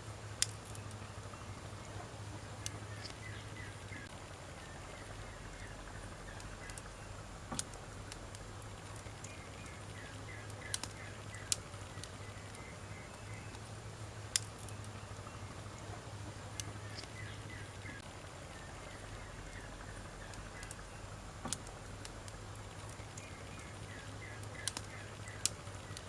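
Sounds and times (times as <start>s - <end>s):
campfire crackling and popping: 0.0s - 26.0s
steady low hum: 0.0s - 26.0s
faint high chirping: 0.7s - 7.2s.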